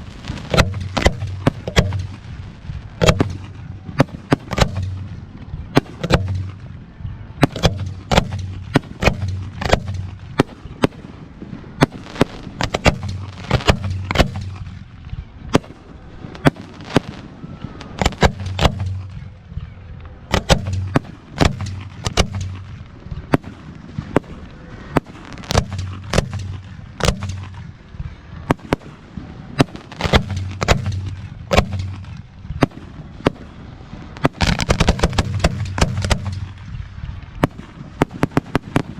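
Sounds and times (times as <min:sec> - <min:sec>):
deep fireworks booms: 0:00.0 - 0:38.9
fireworks sharp bangs: 0:00.0 - 0:38.9.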